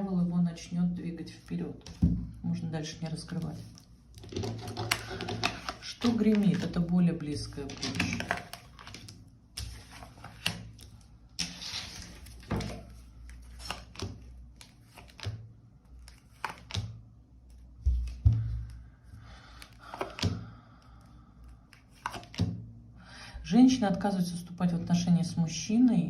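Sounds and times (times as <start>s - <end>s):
cards laid on table: 16.0s - 18.8s, 19.5s - 20.4s.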